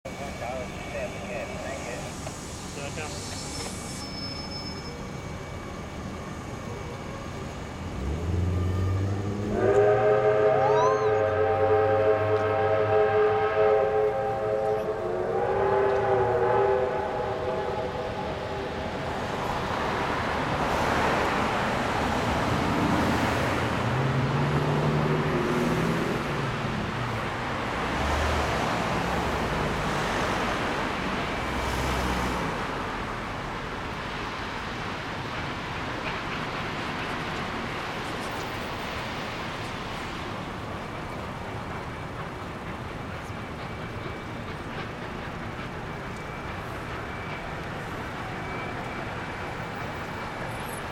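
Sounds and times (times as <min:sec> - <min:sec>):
multi-note steam whistle: 0:00.1 - 0:20.3, 0:46.1 - 0:50.8
steam locomotive exhaust rush: 0:00.1 - 0:50.9.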